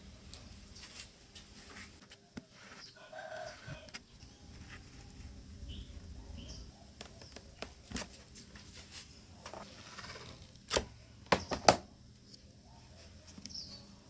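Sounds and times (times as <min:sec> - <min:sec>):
faint bird chirps: 0:02.5 - 0:07.6, 0:12.6 - 0:14.0.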